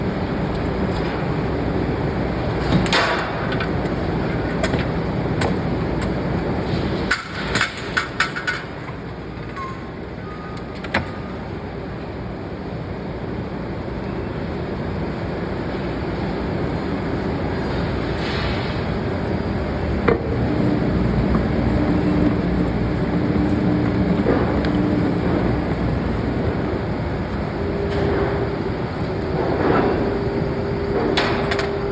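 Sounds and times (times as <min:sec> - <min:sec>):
low industrial rumble: 0:15.2 - 0:31.9.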